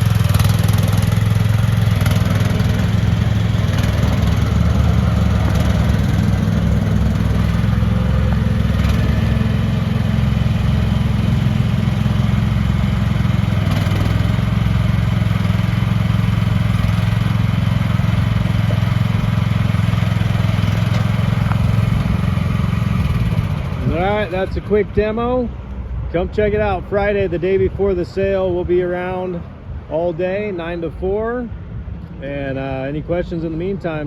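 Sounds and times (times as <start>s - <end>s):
small gasoline engine running: 0.0s - 24.7s.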